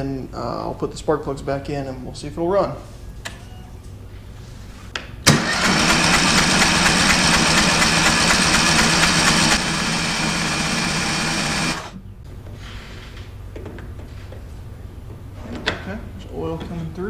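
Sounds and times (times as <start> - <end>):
electric starter cranking engine: 5.3 - 12.0.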